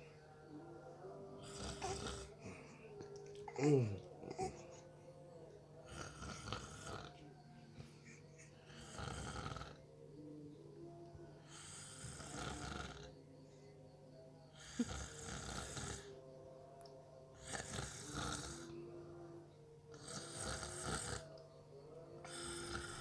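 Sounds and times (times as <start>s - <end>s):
person snoring: 1.4s - 2.8s, 5.8s - 7.2s, 8.7s - 9.8s, 11.5s - 13.1s, 14.6s - 16.2s, 17.4s - 18.7s, 19.9s - 21.3s, 22.2s - 23.0s.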